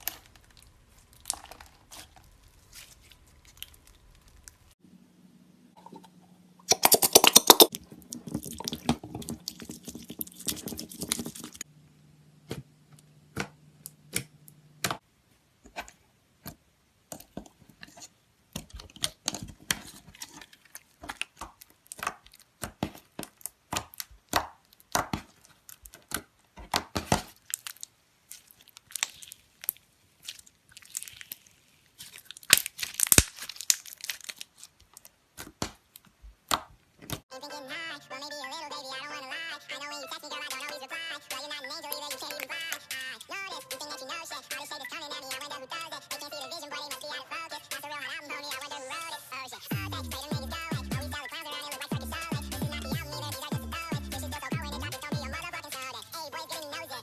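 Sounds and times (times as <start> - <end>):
slime crackling and squelching: 0.0 - 4.8, 6.7 - 11.7, 17.1 - 37.2.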